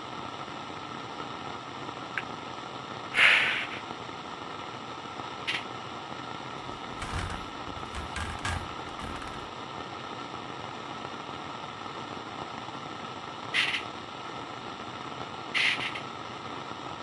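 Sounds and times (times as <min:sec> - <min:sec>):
low thumps and clicks: 0:06.6 - 0:09.5.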